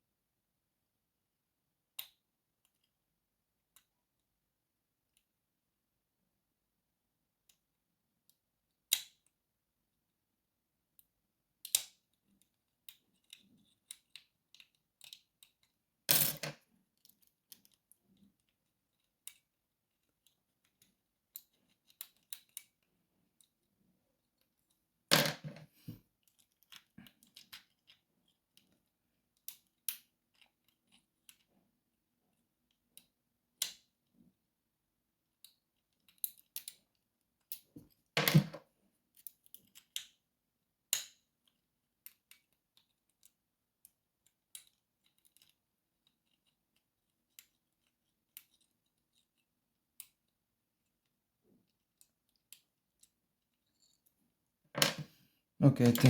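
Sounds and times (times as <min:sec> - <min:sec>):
lock picks clicking and scraping: 0:11.7 - 0:15.7, 0:44.3 - 0:49.4.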